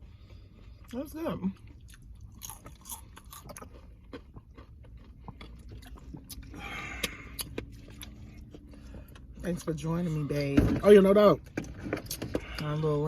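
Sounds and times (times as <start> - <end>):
chewing and crunching: 0.0 - 10.3.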